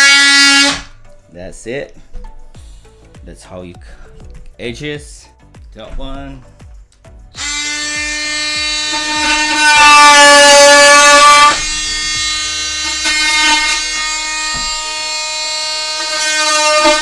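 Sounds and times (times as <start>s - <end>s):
multi-tool blade cutting wood: 0.0s - 0.9s, 7.4s - 17.0s.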